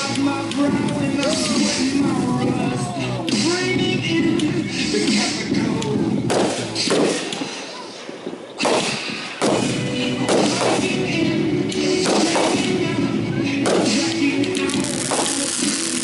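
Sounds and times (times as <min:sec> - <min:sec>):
music playing: 0:00.0 - 0:07.8, 0:08.6 - 0:16.0
fireworks bangs echoing: 0:06.2 - 0:07.4, 0:08.6 - 0:11.0, 0:12.0 - 0:12.8, 0:13.6 - 0:16.0.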